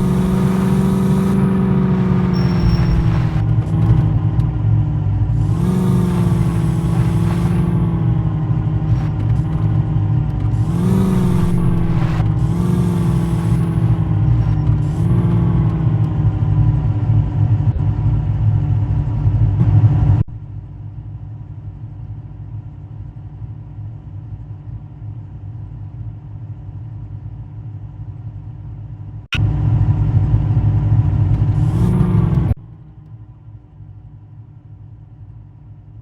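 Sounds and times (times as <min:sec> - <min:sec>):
engine revving under load: 0:00.0 - 0:17.8, 0:31.0 - 0:33.2.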